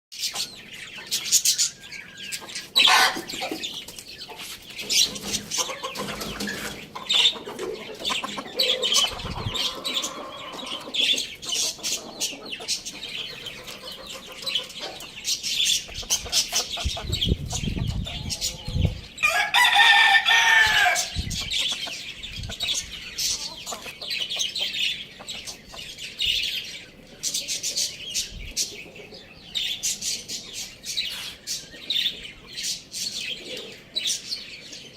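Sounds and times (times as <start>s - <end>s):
chickens clucking: 0.2s - 34.9s
chicks chirping and peeping: 0.2s - 34.9s
rooster crowing: 19.2s - 21.2s.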